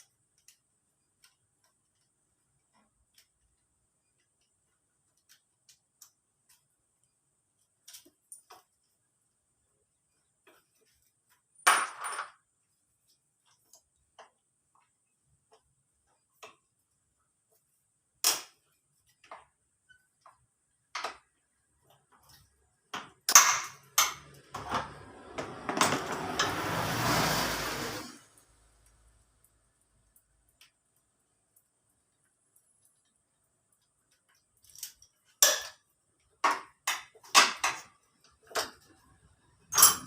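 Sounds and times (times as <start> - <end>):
rattling clatter of parts: 21.9 - 27.1
metal tools knocking and clinking: 34.6 - 38.9, 39.7 - 40.0.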